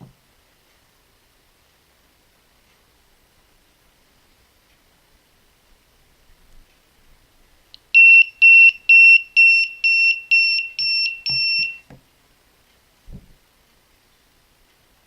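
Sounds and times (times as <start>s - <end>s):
alarm buzzer beeping: 8.0s - 11.9s.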